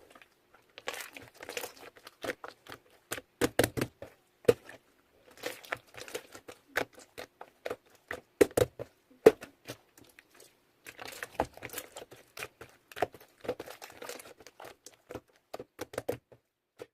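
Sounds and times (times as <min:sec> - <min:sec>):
plastic packaging crinkling: 0:00.1 - 0:02.9, 0:10.9 - 0:15.0.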